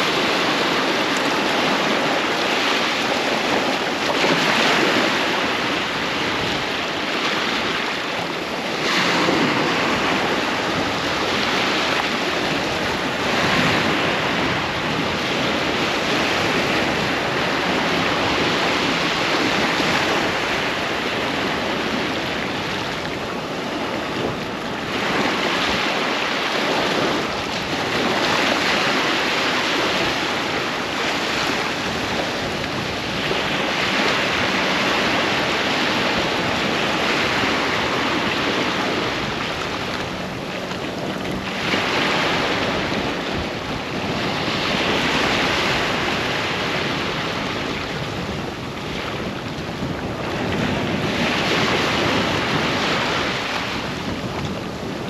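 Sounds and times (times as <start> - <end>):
ocean waves breaking on beach: 0.0 - 55.0
wind on microphone: 0.0 - 55.0.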